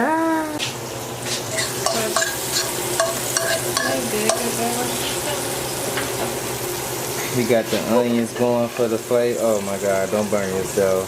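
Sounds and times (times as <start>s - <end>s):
onions sizzling in a pan: 0.0s - 11.0s
utensil scraping a pan: 1.3s - 4.4s.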